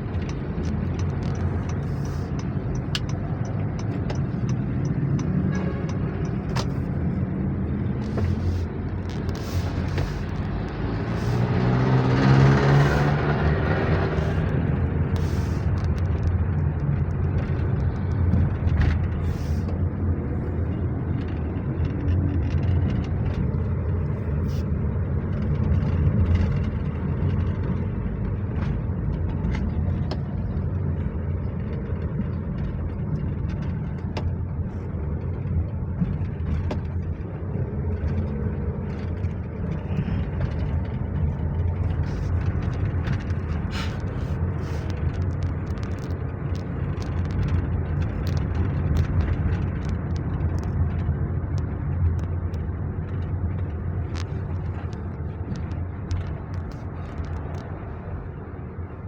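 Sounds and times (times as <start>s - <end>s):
car engine and road noise: 0.0s - 59.0s
light clicks and knocks: 20.8s - 58.1s.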